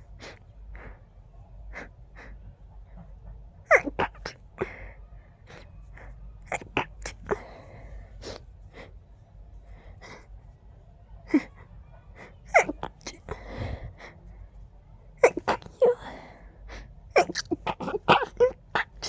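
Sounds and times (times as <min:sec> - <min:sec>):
quick breaths: 0:00.0 - 0:03.2, 0:07.2 - 0:10.6, 0:13.1 - 0:14.6, 0:15.6 - 0:17.1
person sneezing: 0:15.2 - 0:16.2, 0:17.1 - 0:19.0.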